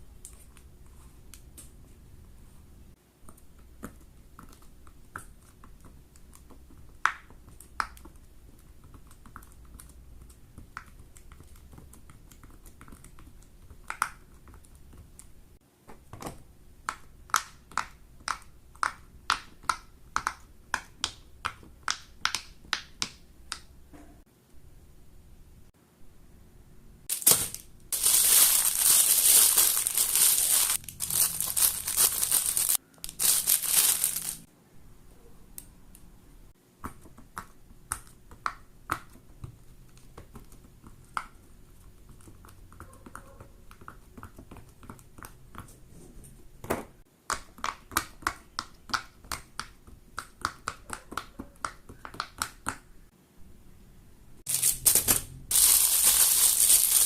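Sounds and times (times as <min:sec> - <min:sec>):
crinkling plastic: 0:27.1 - 0:34.5, 0:54.5 - 0:57.0.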